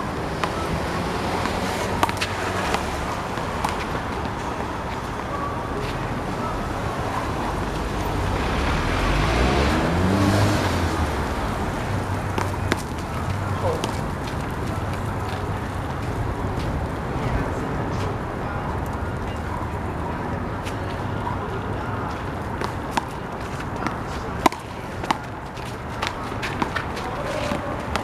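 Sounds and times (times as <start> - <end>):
road traffic: 0.0 - 28.0
vehicle engine speeding up: 7.3 - 14.2.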